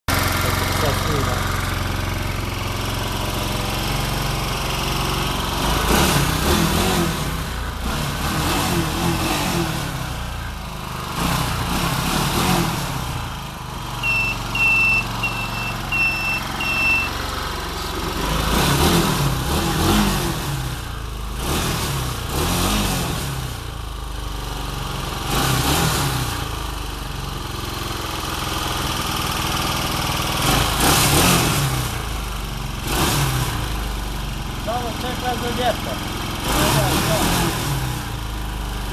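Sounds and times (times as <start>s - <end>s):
quad bike engine revving: 0.1s - 38.9s
short high beeps: 14.0s - 17.2s.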